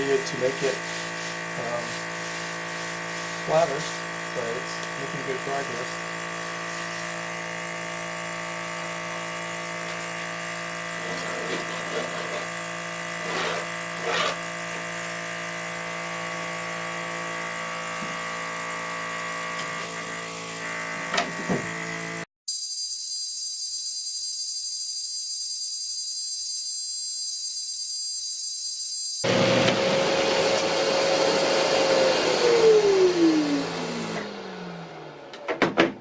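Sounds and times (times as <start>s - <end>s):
vacuum pump running: 0.0s - 22.2s, 29.2s - 35.9s
drum sander humming: 0.1s - 22.2s, 29.2s - 35.4s.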